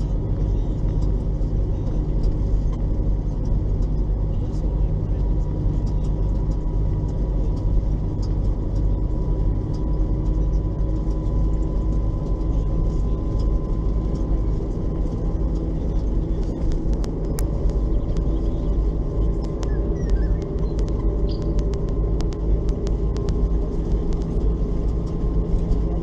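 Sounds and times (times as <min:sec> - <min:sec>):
bus engine rumbling: 0:00.0 - 0:26.0
faint steady whine: 0:00.0 - 0:26.0
sharp ticks: 0:05.8 - 0:25.9.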